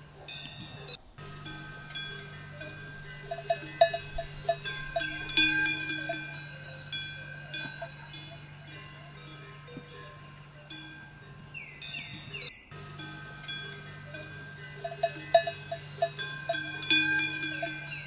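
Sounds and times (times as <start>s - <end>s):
metal bells ringing: 0.0s - 18.0s
short clinks: 0.0s - 18.0s
steady low hum: 0.0s - 18.0s.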